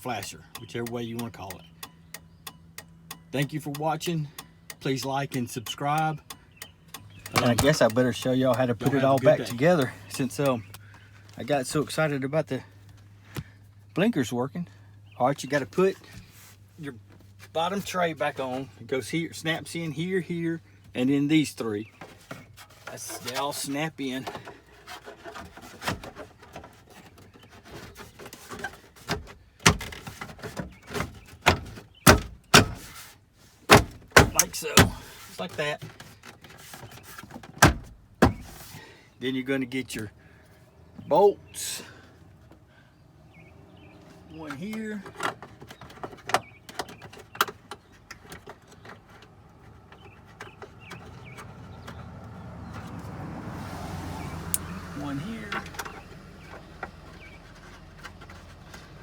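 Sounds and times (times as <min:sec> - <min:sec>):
bolts and hand tool clicking: 0:00.0 - 0:10.8, 0:22.0 - 0:33.1, 0:33.7 - 0:38.8, 0:54.5 - 0:59.0.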